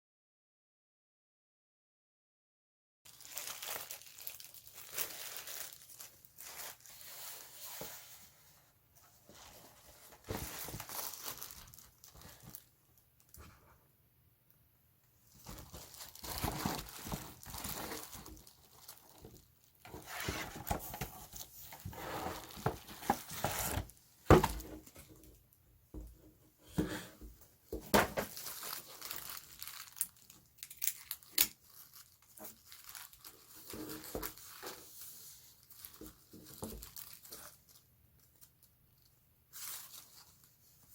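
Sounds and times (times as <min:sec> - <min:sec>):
packaging rustling and tearing: 0:03.1 - 0:08.1, 0:09.3 - 0:12.7, 0:15.3 - 0:25.2, 0:27.9 - 0:38.6.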